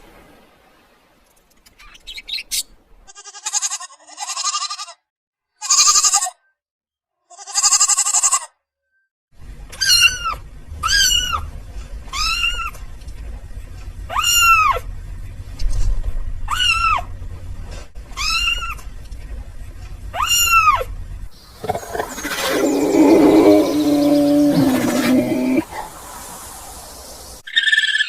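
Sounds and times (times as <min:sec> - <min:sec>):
goat bleating: 0:03.1 - 0:05.0, 0:05.6 - 0:06.4, 0:07.3 - 0:08.5.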